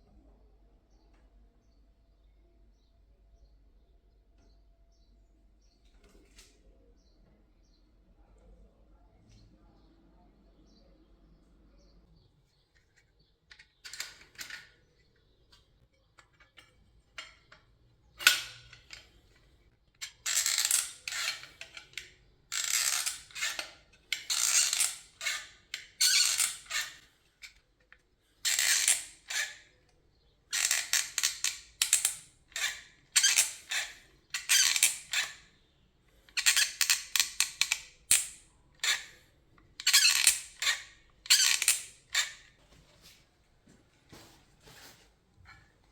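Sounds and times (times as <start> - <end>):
door handle squeaking: 39.8 - 42.4.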